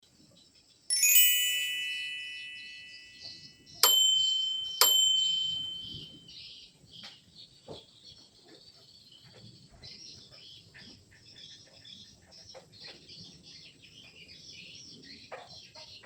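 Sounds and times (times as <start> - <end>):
shimmering high chime cluster: 0.9 - 6.2
sharp ringing dings: 0.9 - 6.3.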